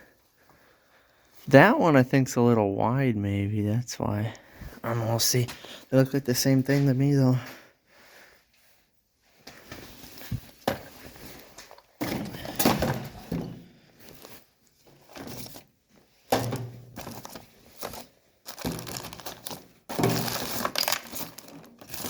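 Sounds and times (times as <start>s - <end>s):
objects knocking and thunking: 10.2s - 13.9s, 14.9s - 15.7s, 16.3s - 20.7s
packaging rustling and crinkling: 14.0s - 22.0s.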